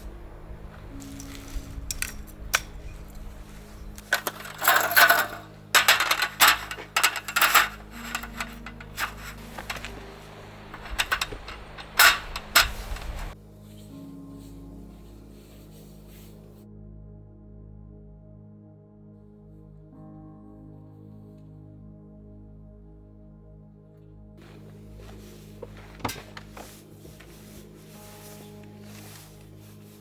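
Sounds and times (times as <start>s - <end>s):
soft background music: 0.0s - 30.0s
small hard objects clinking: 1.0s - 13.4s.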